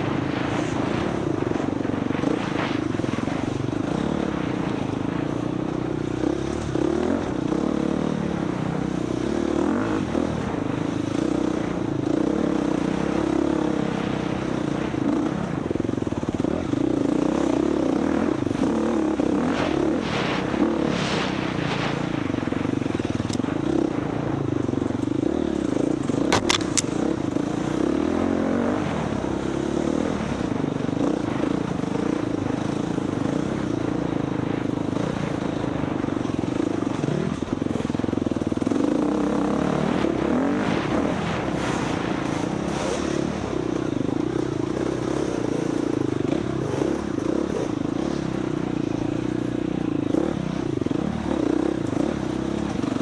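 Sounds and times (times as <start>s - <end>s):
dirt bike engine revving: 0.0s - 53.0s
sharp clicks: 26.3s - 27.1s.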